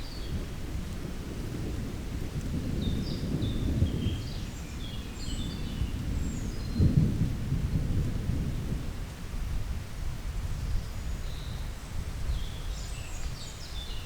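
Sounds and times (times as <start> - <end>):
rain: 0.0 - 14.0.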